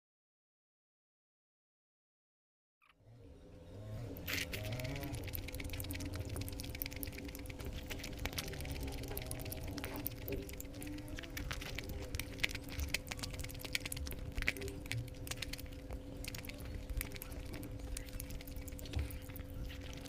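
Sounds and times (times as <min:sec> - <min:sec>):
faint steady hum: 0:02.9 - 0:20.0
wet chewing and lip-smacking: 0:04.1 - 0:20.0.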